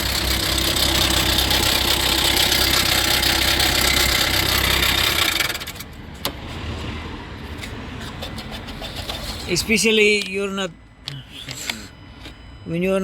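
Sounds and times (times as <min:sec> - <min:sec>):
diesel engine idling with rattle: 0:00.0 - 0:10.0.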